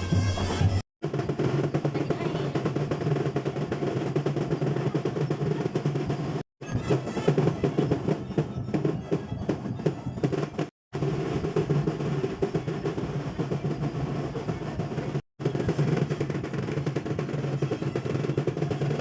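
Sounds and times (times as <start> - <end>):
snare drum rolls: 0.0 - 19.0.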